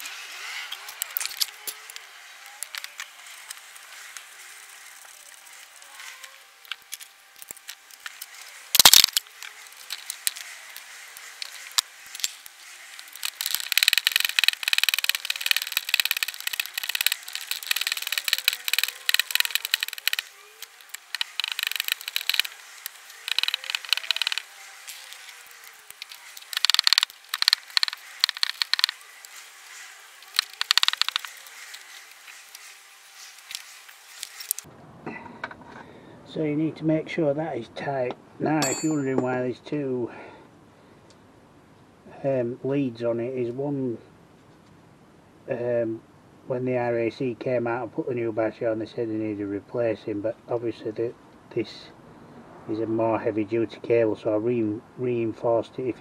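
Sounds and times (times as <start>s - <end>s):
ratchet spanner clicking: 12.2s - 25.3s, 25.9s - 29.0s, 30.3s - 31.4s.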